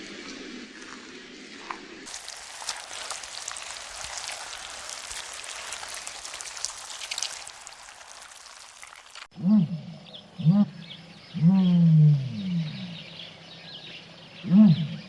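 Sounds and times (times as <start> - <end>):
dense patter of ticks and crackles: 0.0 - 9.3.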